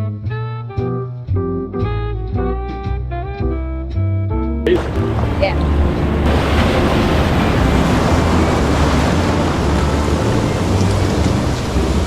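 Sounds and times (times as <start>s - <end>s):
ocean waves breaking: 4.7s - 12.0s
wind buffeting microphone: 4.8s - 12.0s.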